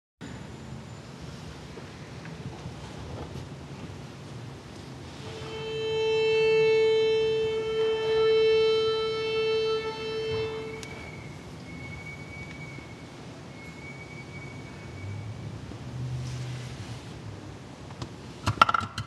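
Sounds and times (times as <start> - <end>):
long steady musical note: 5.1 - 13.2.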